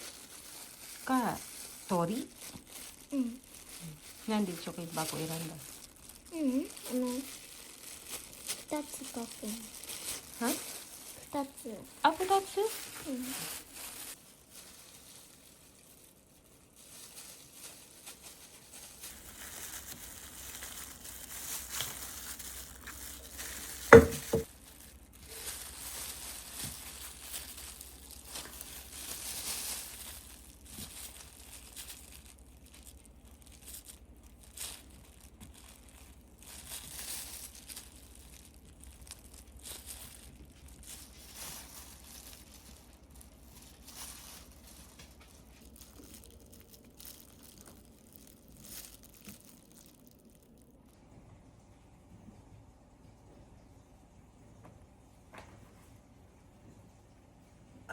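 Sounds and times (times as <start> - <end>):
low steady hum: 0.0 - 57.9
paper and cardboard rustling: 7.9 - 16.0, 16.7 - 32.3.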